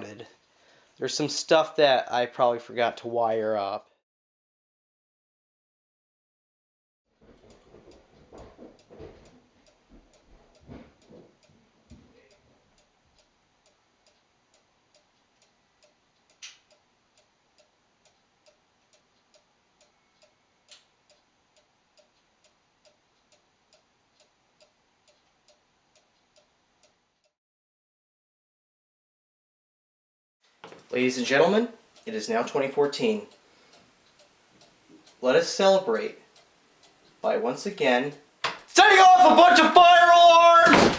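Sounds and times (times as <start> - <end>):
knocks and rustles: 7.2 - 12.1
clock ticking: 7.4 - 11.5, 12.3 - 27.0, 30.8 - 40.9.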